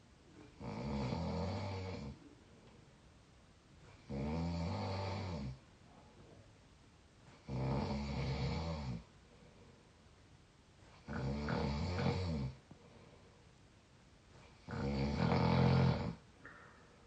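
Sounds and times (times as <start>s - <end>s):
squeaky snoring: 11.1s - 12.6s, 14.6s - 16.2s.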